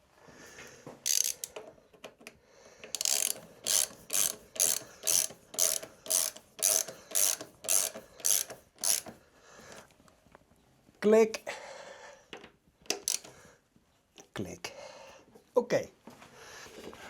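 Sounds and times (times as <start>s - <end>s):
ratchet wrench clicking: 1.0s - 1.6s, 2.9s - 9.1s, 12.9s - 13.3s.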